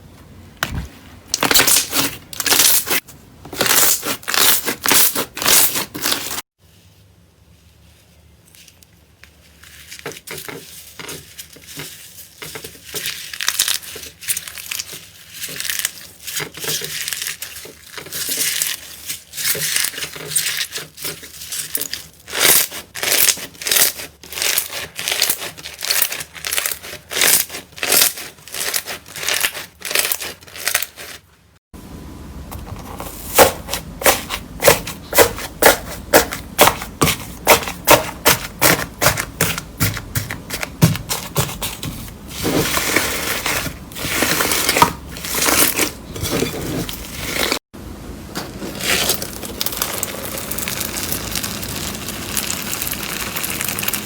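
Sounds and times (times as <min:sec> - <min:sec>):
slime crackling and popping: 0:48.8 - 0:54.0.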